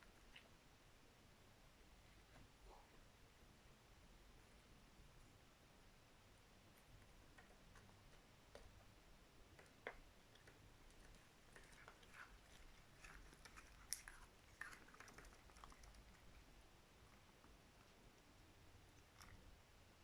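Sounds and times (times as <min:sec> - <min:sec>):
pet chewing and nibbling: 0:06.8 - 0:16.5, 0:18.9 - 0:19.6.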